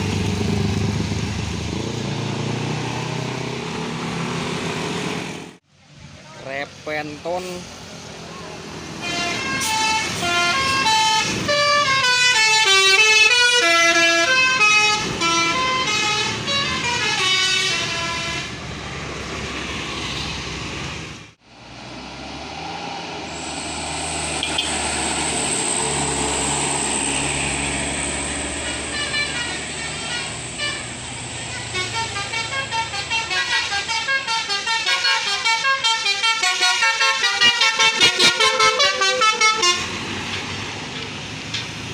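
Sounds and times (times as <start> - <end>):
bus multi-tone air horn tune: 9.0 - 18.6, 28.5 - 40.2.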